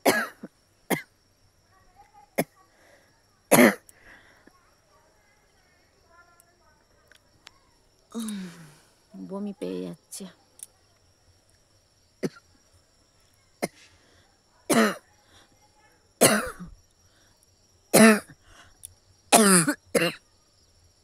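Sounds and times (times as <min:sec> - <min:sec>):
person coughing hard: 0:00.0 - 0:01.0, 0:03.5 - 0:03.8, 0:14.7 - 0:15.0, 0:16.2 - 0:16.7, 0:18.0 - 0:18.3, 0:19.3 - 0:20.2.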